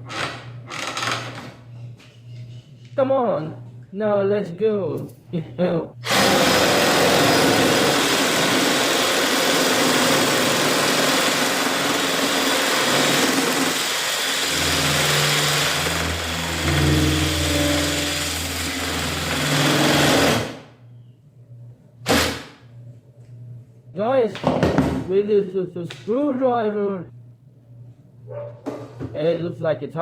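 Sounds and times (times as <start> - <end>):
jigsaw blade buzzing through wood: 6.0 - 20.7, 22.0 - 22.6.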